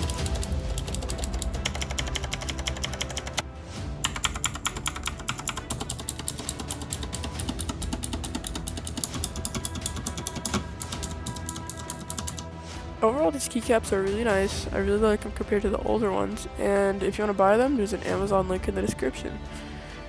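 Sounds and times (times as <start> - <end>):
fast typing on mechanical keyboard: 0.0 - 3.4, 4.0 - 12.5
background music: 0.0 - 20.0.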